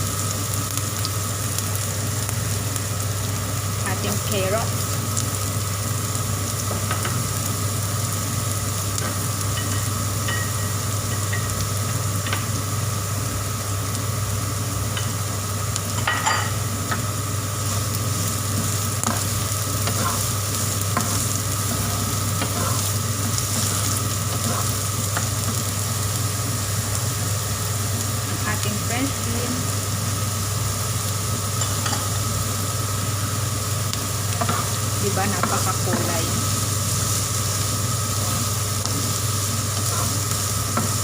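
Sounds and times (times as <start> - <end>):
vegetables sizzling in a frying pan: 0.0 - 41.0
utensil scraping a pan: 19.1 - 20.3, 20.9 - 25.3, 39.7 - 41.0.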